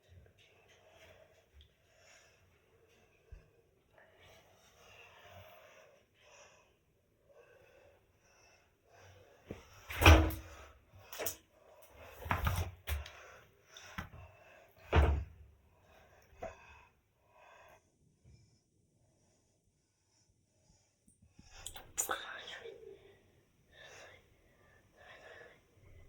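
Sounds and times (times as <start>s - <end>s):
faint breathy sounds: 0.4s - 9.9s, 13.0s - 26.0s.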